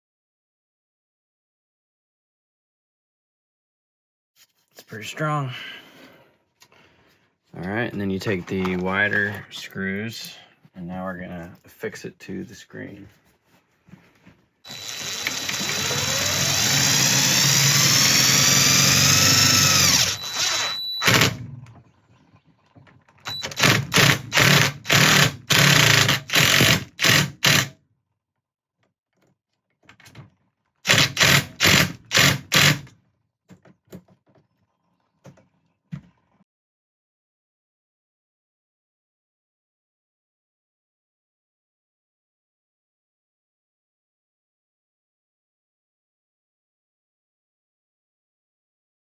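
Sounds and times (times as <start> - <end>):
cordless drill driving screws: 14.7 - 21.4, 23.3 - 27.7, 30.9 - 32.9.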